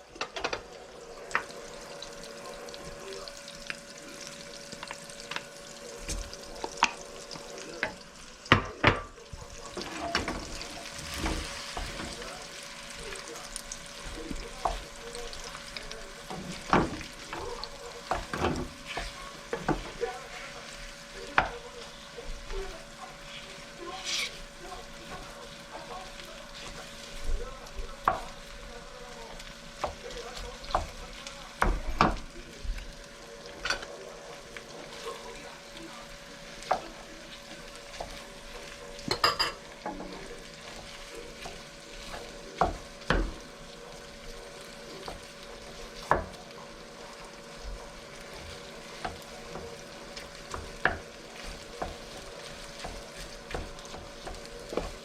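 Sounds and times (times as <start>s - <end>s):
rice sizzling in a pan: 0.0s - 55.0s
spatula knocking and scraping pan: 14.0s - 22.5s, 26.0s - 28.6s, 36.5s - 43.6s, 47.6s - 55.0s.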